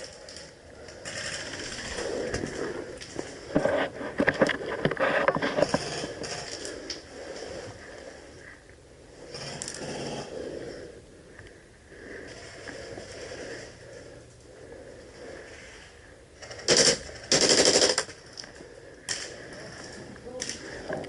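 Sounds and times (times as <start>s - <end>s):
airsoft gun bursts: 16.5s - 18.2s.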